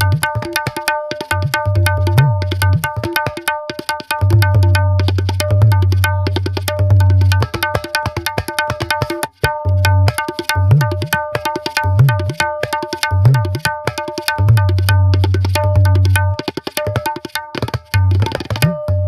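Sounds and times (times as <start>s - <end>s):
tabla ringing strokes: 0.0s - 19.0s.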